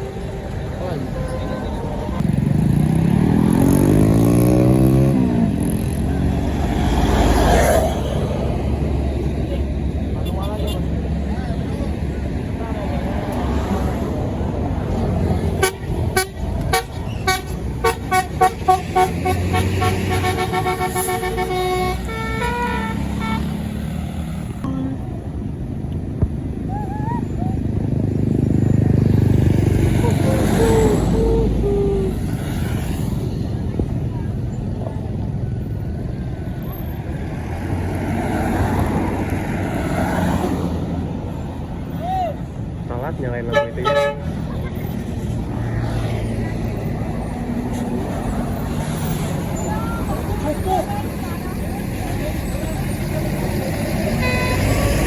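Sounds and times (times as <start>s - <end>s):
multi-tone musical bus horn: 0.0s - 2.4s, 15.4s - 24.0s, 24.6s - 25.2s, 29.9s - 32.4s, 43.5s - 44.6s, 53.7s - 55.0s
large vehicle passing by: 0.0s - 43.5s, 44.1s - 55.0s
bus engine rumble: 0.0s - 55.0s.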